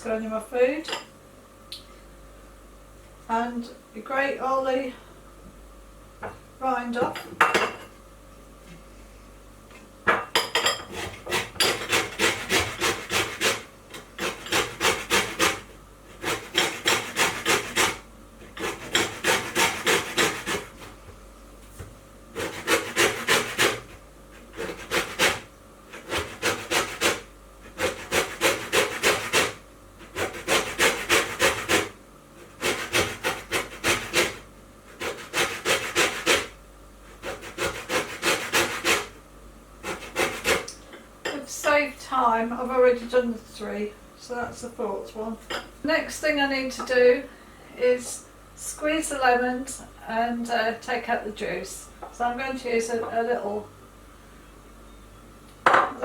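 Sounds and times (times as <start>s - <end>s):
rind grated on hand grater: 10.9s - 20.9s, 22.4s - 36.5s, 37.1s - 39.1s, 39.8s - 40.7s.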